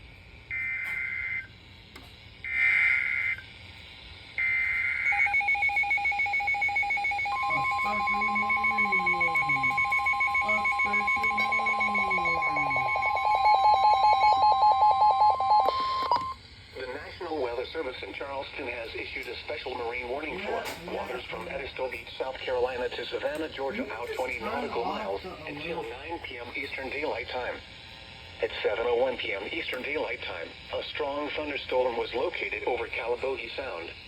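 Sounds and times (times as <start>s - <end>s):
steady high alarm tone: 0.0s - 34.0s
buzzy digital data bursts: 1.0s - 18.7s
rapidly pulsing tone: 5.2s - 16.0s.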